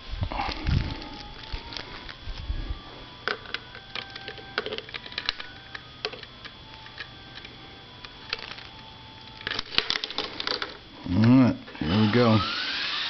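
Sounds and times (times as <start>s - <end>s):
faint steady hum: 0.0s - 13.0s
plastic parts clicking and tapping: 3.2s - 10.8s.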